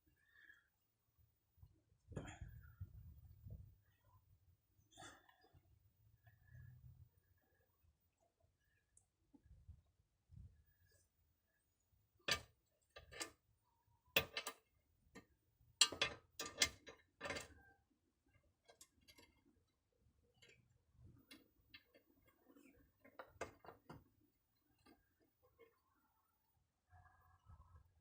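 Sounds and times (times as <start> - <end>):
tools and metal parts clicking: 12.3 - 13.4, 14.2 - 17.6.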